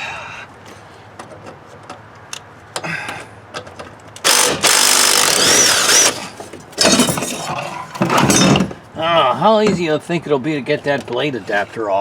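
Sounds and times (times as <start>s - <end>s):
impact wrench hammering: 4.2s - 6.2s.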